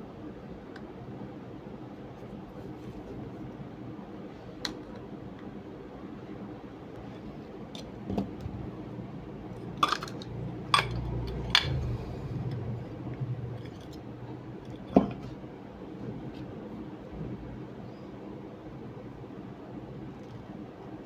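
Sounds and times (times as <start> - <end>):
low hum: 9.5 - 15.3.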